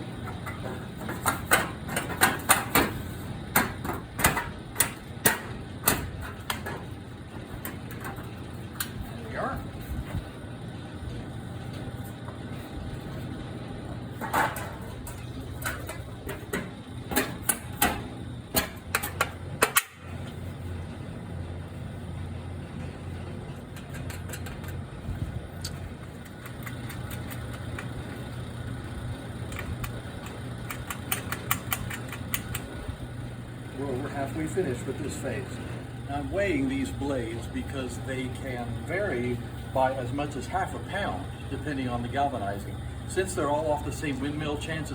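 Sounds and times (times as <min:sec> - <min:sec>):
engine-like hum: 0:00.0 - 0:44.9
metal clicks and knocks: 0:23.7 - 0:24.8, 0:29.5 - 0:32.7.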